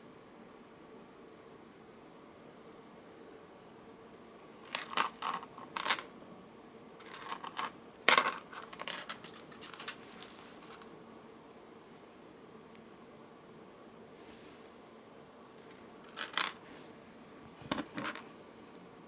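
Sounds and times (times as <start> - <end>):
beads clicking and clattering: 4.6 - 6.1, 7.0 - 10.9, 15.7 - 16.6.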